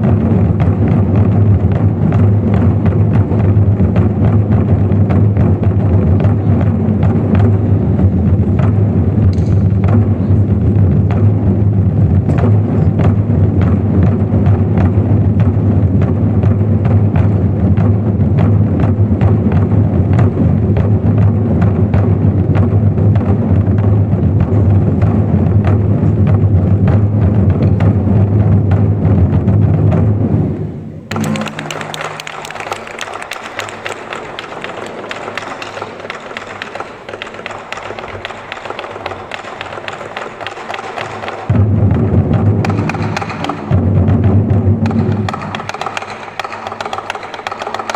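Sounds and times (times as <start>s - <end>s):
accented drum strikes: 0.0s - 47.9s
large drums rolling: 0.0s - 47.9s.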